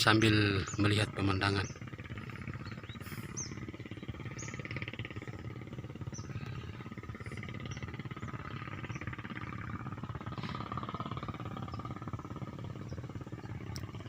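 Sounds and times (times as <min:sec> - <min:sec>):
bird chirping: 0:00.1 - 0:05.4.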